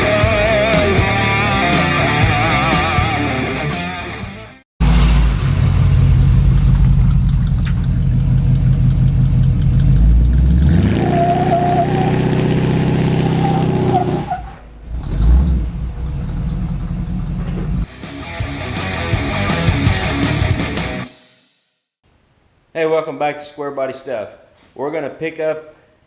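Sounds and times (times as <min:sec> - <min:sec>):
vehicle engine revving hard: 0:09.7 - 0:20.5.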